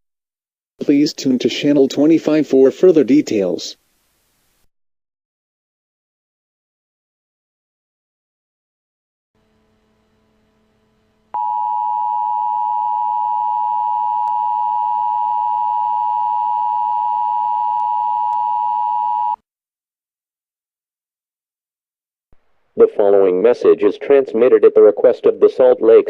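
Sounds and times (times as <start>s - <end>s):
faint hum: 9.4s - 19.4s
two-tone alert signal: 11.4s - 19.4s.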